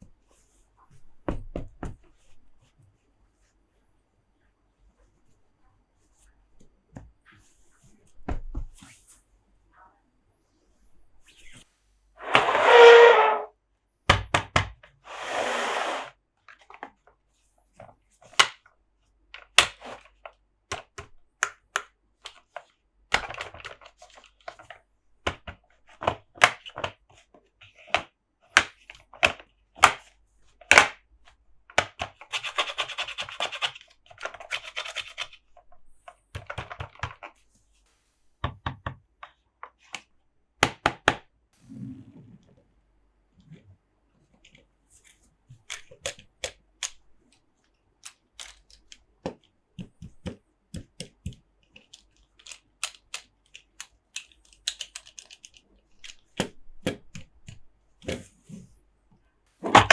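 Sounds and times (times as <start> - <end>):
rubbing and scratching: 12.2 - 13.5, 15.1 - 16.2, 32.0 - 36.6, 59.6 - 59.9
taps and clicks on toys: 20.7 - 22.4, 48.0 - 58.3.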